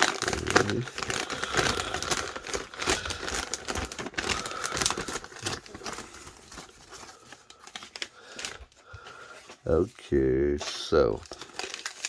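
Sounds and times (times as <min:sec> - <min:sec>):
wrapping paper crumpling: 0:00.0 - 0:12.0.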